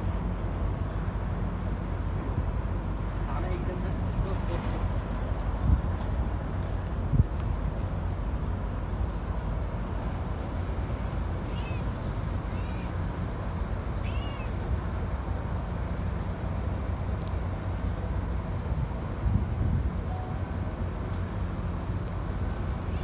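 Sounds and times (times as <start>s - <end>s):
steady low rumble: 0.0s - 23.0s
cat meowing: 11.4s - 13.0s, 14.0s - 14.6s.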